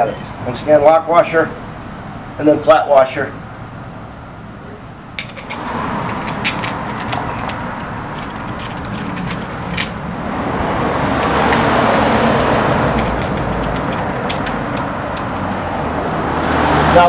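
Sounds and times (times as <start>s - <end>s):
road traffic passing: 0.0s - 17.0s
metallic clicks of bolts: 5.2s - 10.0s, 12.9s - 16.3s.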